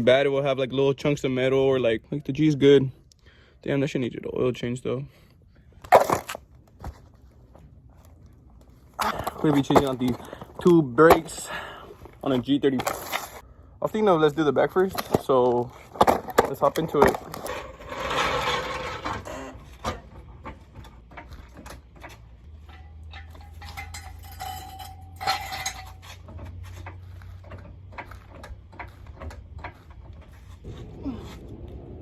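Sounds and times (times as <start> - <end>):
low steady hum: 4.4 - 32.0
metal tools clinking: 9.0 - 13.4, 21.1 - 29.9.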